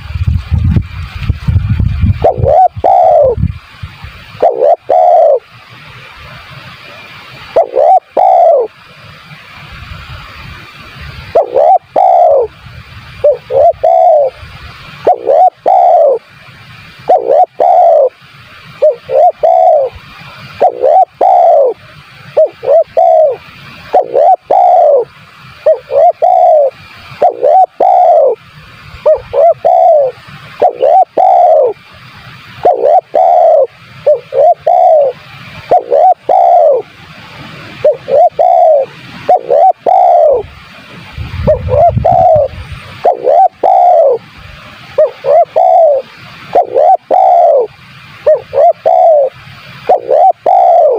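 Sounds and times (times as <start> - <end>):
dove cooing: 2.2 - 3.4, 4.4 - 5.5, 7.5 - 8.8, 11.3 - 12.6, 13.2 - 14.4, 15.0 - 16.3, 17.0 - 18.2, 18.8 - 28.4, 29.0 - 31.9, 32.6 - 36.9, 37.8 - 40.5, 41.4 - 44.3, 45.0 - 50.9.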